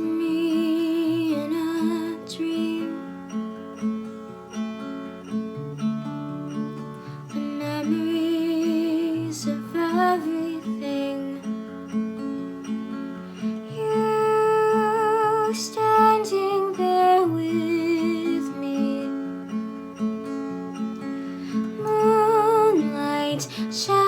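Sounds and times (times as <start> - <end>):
woman singing a slow ballad: 0.0 - 3.2, 7.4 - 11.6, 13.7 - 19.5, 21.5 - 24.0
acoustic guitar picking: 0.0 - 24.0.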